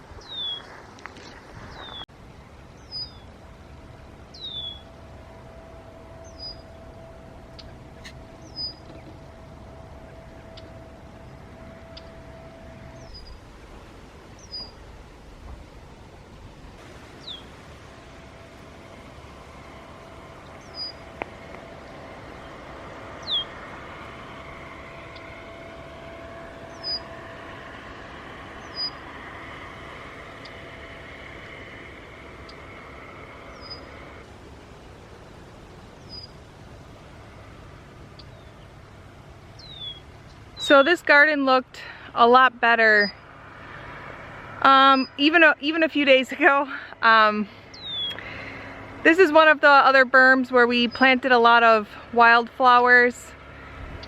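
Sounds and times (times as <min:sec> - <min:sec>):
faint steady hum: 0:00.0 - 0:54.0
bird whistling calls: 0:00.2 - 0:00.7, 0:01.7 - 0:02.0, 0:04.3 - 0:04.9, 0:06.2 - 0:06.7, 0:07.6 - 0:09.1, 0:17.2 - 0:17.5, 0:20.5 - 0:21.0, 0:23.2 - 0:23.5, 0:36.0 - 0:36.4, 0:39.6 - 0:40.8, 0:47.7 - 0:48.2.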